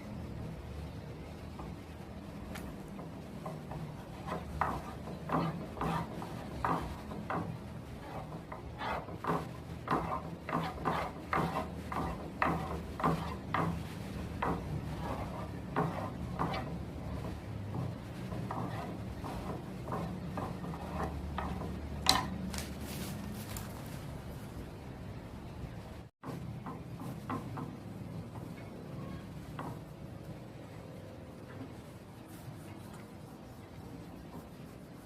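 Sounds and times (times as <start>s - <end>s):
hand rubbing on wooden board: 3.4s - 22.2s, 31.4s - 35.0s.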